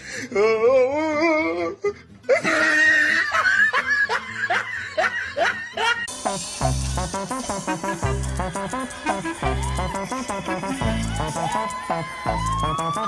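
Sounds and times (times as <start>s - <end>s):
person laughing: 2.3s - 6.1s, 7.1s - 13.0s
music track with a beat: 6.1s - 13.0s.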